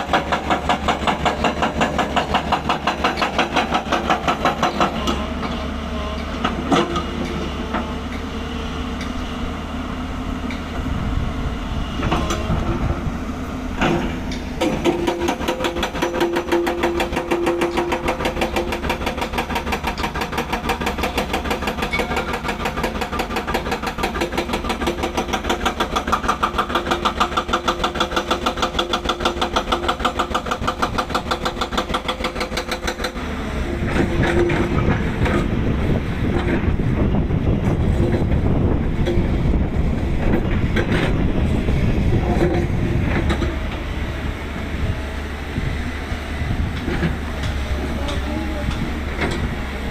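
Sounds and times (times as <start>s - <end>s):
heavy engine running: 0.0s - 49.9s.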